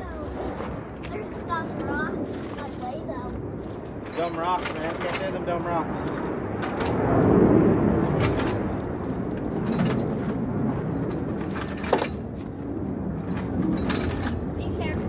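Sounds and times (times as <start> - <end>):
floor jack wheels grinding on rocks: 4.0 - 7.1.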